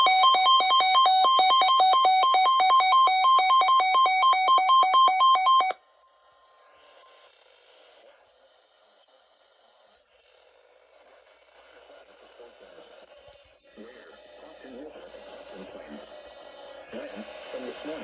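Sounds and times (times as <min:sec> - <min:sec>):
two-pitch electronic alert beep: 0:00.0 - 0:05.8
faint radio hiss: 0:06.1 - 0:18.0.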